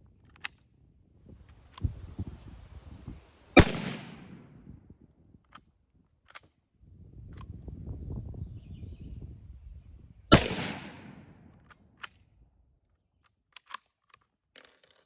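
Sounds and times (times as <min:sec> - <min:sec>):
rifle shot: 0:03.6 - 0:04.6, 0:10.3 - 0:11.5.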